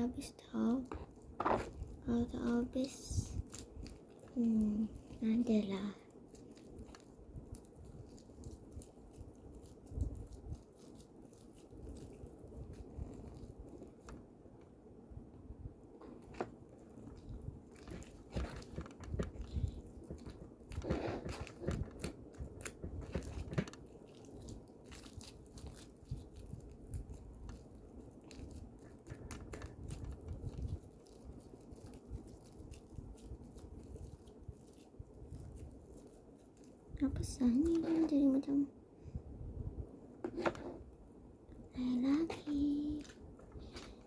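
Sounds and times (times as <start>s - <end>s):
slime squelching and crackling: 0.0s - 14.8s, 15.8s - 38.8s, 40.0s - 44.0s.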